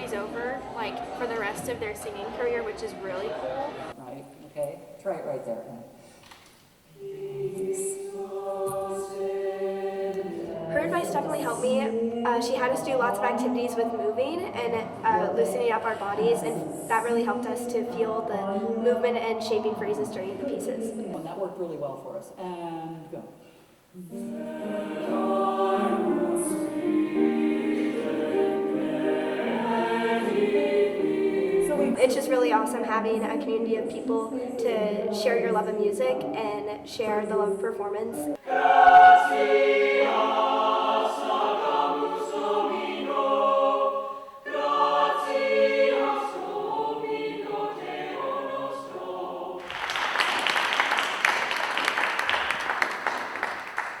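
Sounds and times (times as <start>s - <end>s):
choir singing in harmony: 6.9s - 21.0s, 24.0s - 36.3s, 38.3s - 53.5s
audience applauding: 49.6s - 54.0s.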